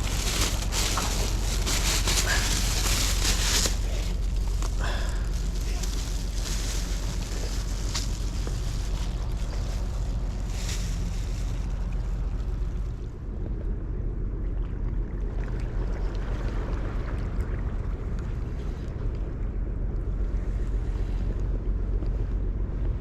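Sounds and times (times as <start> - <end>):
brief rustles: 0.0 - 11.7.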